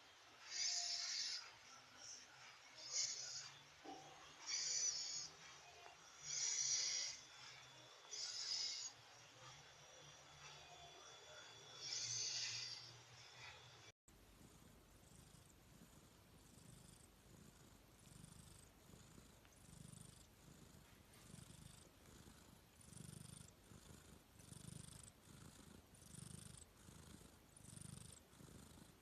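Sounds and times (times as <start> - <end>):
cat snoring: 0.4 - 29.0.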